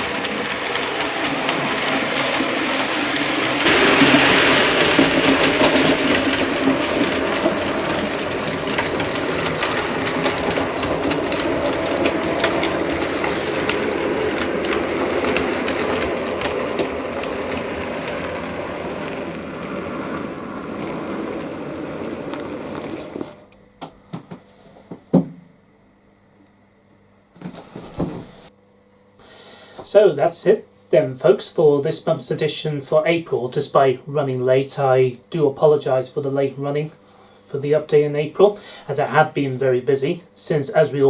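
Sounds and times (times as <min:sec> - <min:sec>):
model train rumbling: 0:00.0 - 0:23.6, 0:29.2 - 0:41.0
wheels clicking over rail joints: 0:00.0 - 0:23.6.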